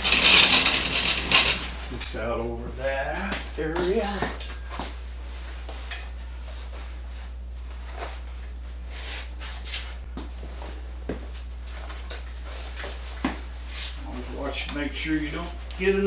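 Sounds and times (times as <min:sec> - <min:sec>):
heavy machine knocks and clanks: 0:00.0 - 0:02.1
steady low hum: 0:00.0 - 0:16.0.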